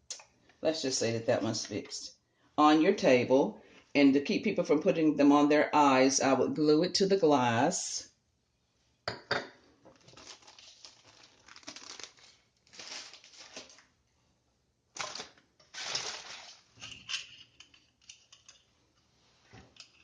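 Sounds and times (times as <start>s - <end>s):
crinkly rustling: 9.9s - 13.9s, 15.0s - 16.8s.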